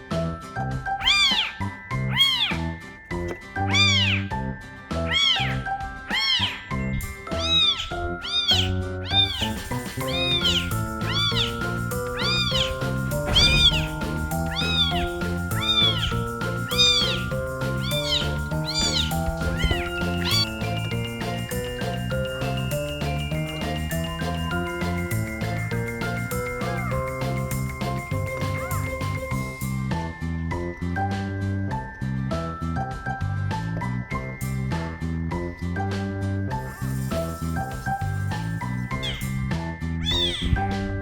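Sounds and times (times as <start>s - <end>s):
background music with plucked notes: 0.0s - 41.0s
kitten meowing: 1.0s - 2.7s, 3.6s - 4.3s, 5.0s - 20.8s, 38.9s - 39.4s, 40.0s - 40.9s.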